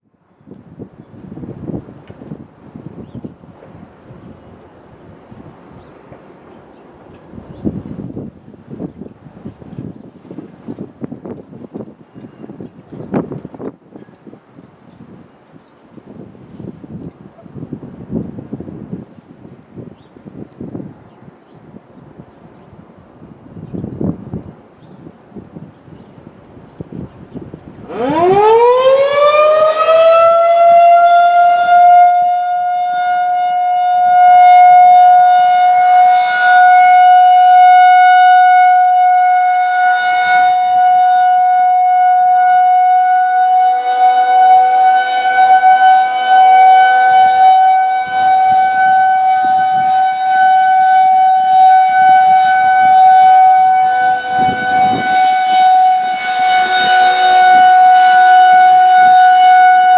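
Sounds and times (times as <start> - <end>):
wind buffeting microphone: 0.2 - 43.5, 44.1 - 59.9
warning siren winding up: 27.8 - 59.9.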